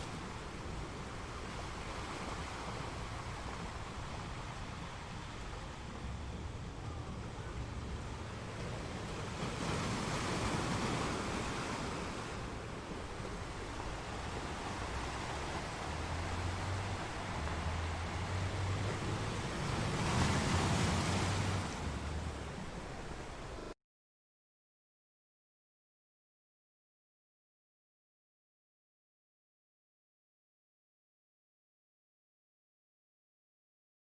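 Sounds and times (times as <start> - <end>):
sea waves breaking on rocks: 0.0 - 5.9, 7.9 - 23.7.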